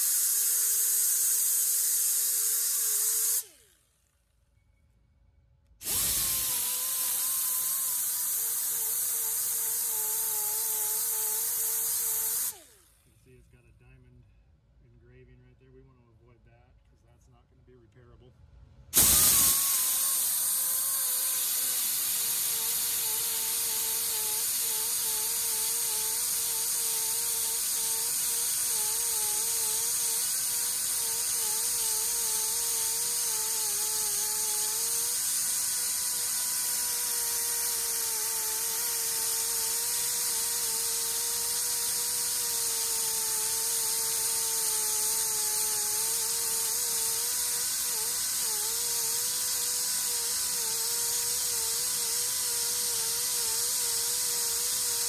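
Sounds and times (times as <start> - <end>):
power sander grinding metal: 5.8 - 12.7, 19.0 - 55.0.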